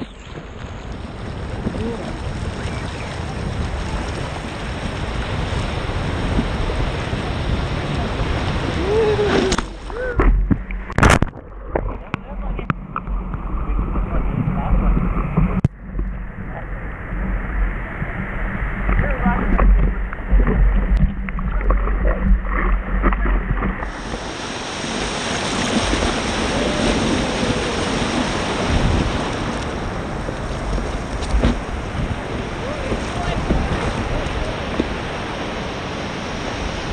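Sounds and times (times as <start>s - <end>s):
ocean surf: 0.0s - 36.9s
wind buffeting microphone: 0.0s - 36.9s
person exclaiming: 8.8s - 10.3s.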